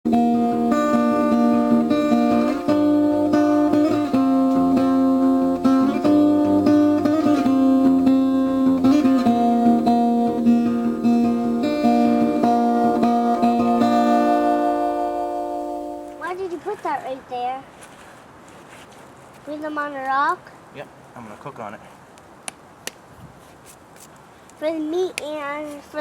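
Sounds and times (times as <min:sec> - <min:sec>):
plucked acoustic guitar music: 0:00.1 - 0:17.2.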